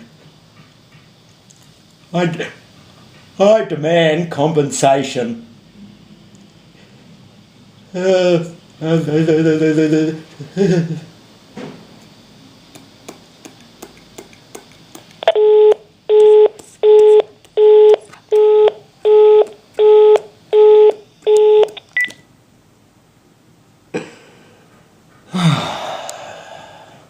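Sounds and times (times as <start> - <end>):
busy tone beeps: 15.3 - 22.2.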